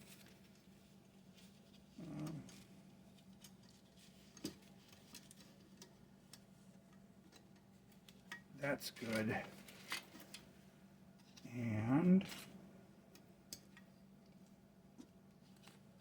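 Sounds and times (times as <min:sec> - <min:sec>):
person murmuring: 0:02.0 - 0:02.6.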